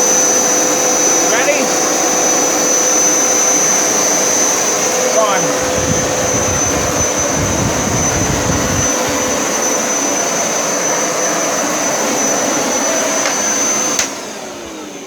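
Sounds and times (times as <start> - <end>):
carpet cleaner motor whining: 0.0 - 15.0
deep rumble: 5.5 - 9.5.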